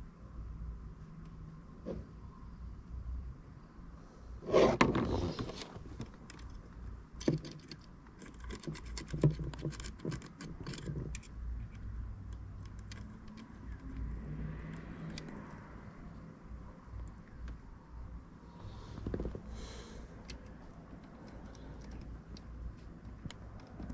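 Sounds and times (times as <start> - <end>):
scrape or rustle: 4.4 - 6.0
small clicks and taps: 6.0 - 14.1, 20.2 - 23.9.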